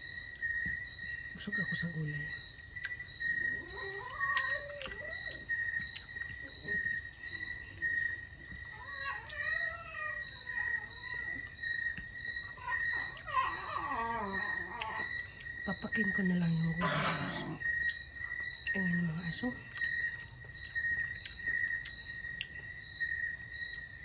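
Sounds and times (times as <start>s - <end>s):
crickets chirping: 0.0s - 24.0s
dogs whining and howling: 3.0s - 18.2s.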